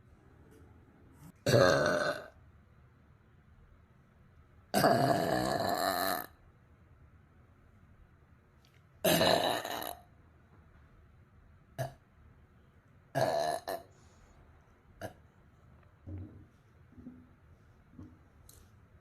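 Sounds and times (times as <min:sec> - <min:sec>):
woman burping: 0:01.4 - 0:02.3, 0:04.8 - 0:06.3, 0:09.0 - 0:10.0, 0:13.2 - 0:13.9.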